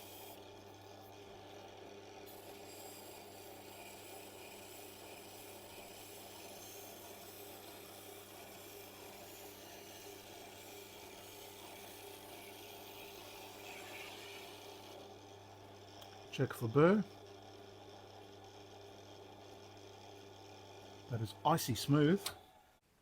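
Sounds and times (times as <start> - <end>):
knife rubbing on honing wheel: 2.3 - 8.0.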